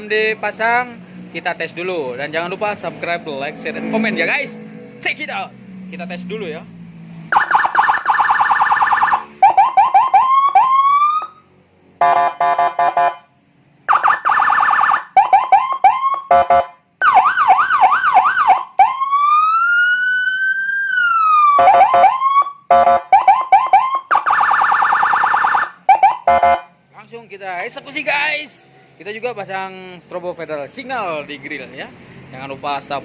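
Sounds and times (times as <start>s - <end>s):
electronic siren: 7.3s - 13.3s, 13.9s - 26.7s.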